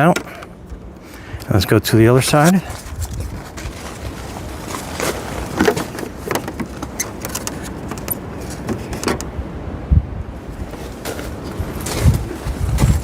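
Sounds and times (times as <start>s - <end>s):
handling clicks and rustles: 2.2s - 9.4s, 10.4s - 13.0s.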